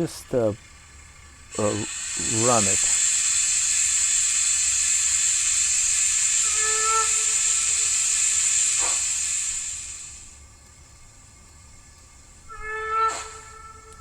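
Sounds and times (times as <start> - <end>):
steady steam hiss: 0.0 - 14.0
steam locomotive whistle: 1.5 - 10.3, 12.5 - 14.0.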